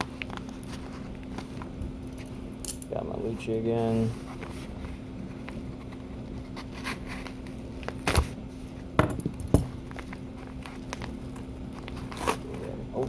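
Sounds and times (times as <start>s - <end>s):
wrapping rustling: 9.8s - 13.0s.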